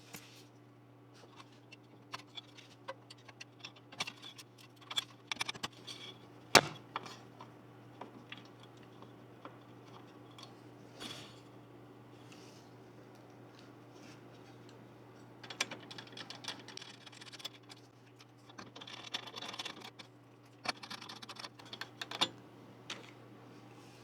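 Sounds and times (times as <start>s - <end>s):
computer parts clicking and rattling: 15.4s - 23.1s.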